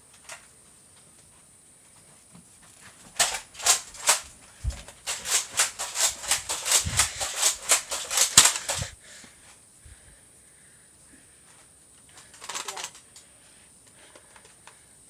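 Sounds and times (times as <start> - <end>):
toy blasters firing: 3.2 - 4.3, 5.1 - 9.0.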